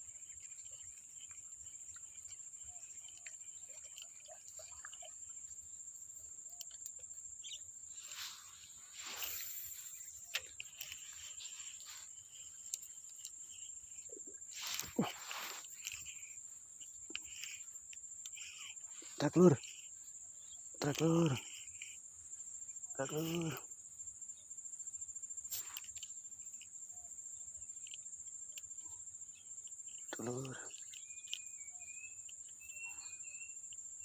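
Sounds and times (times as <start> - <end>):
crickets chirring: 0.0 - 34.0
rustling: 7.8 - 20.0.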